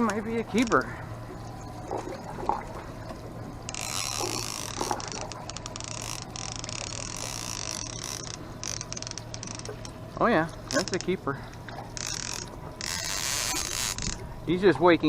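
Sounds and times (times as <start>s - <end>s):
fishing reel ratcheting whir: 3.6s - 10.0s, 10.6s - 11.2s, 12.0s - 14.3s.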